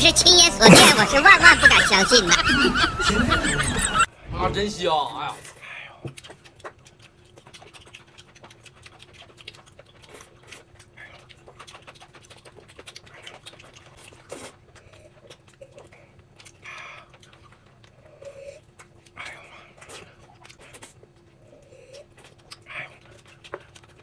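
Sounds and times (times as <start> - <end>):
faint steady hum: 0.0 - 24.0
chewing: 5.4 - 24.0.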